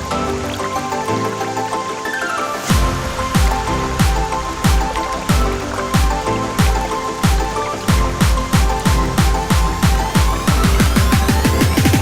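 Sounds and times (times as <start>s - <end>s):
electronic dance music: 0.0s - 12.0s.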